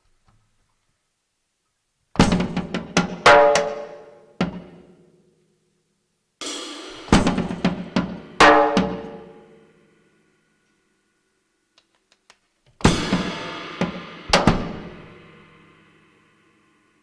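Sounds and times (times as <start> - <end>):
drum kit with ringing cymbals: 2.2 - 4.9, 6.4 - 11.1, 12.8 - 17.0.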